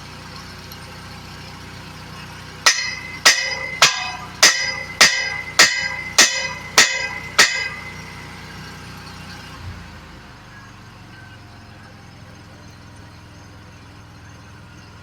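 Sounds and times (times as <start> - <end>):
hammer striking steel: 2.7 - 8.5
steady low hum: 2.7 - 8.5.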